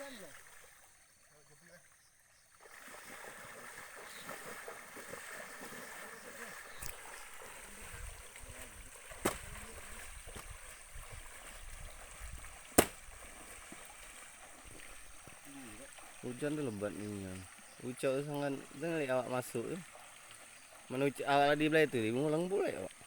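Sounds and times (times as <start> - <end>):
moving water: 0.0 - 23.0
sharp knocks: 12.8 - 13.0.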